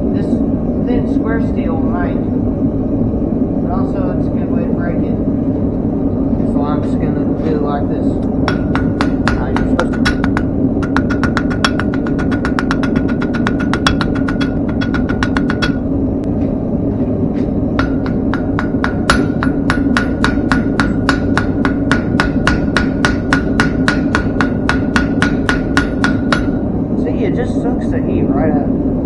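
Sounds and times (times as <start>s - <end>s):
steady low hum: 0.0s - 29.0s
hammer ringing on anvil: 8.5s - 15.9s, 17.8s - 26.6s.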